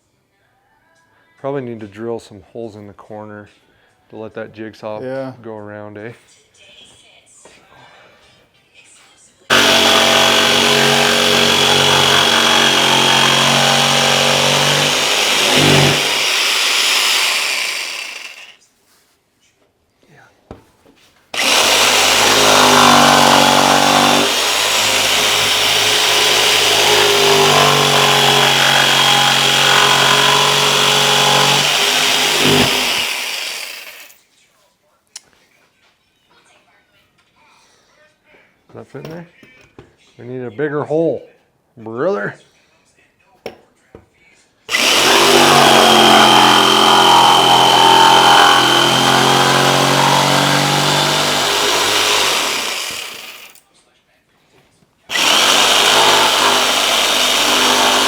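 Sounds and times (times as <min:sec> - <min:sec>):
electric drill whining: 0:09.5 - 0:18.6, 0:21.4 - 0:34.2, 0:44.7 - 0:53.6, 0:55.1 - 0:58.0
jigsaw cutting wood: 0:09.5 - 0:18.6, 0:21.4 - 0:34.2, 0:44.7 - 0:53.6, 0:55.1 - 0:58.0.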